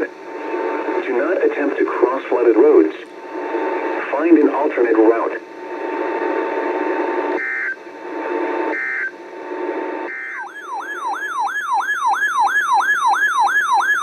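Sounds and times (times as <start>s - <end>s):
radio static: 0.0s - 10.1s
warbling siren-like alert tone: 10.3s - 14.0s.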